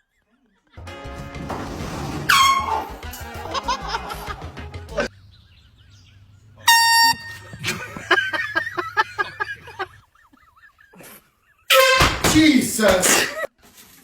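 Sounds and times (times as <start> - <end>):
air horn blast: 1.9 - 3.1, 6.6 - 7.8, 11.7 - 12.4
person's voice in rhythmic bursts: 12.2 - 13.4.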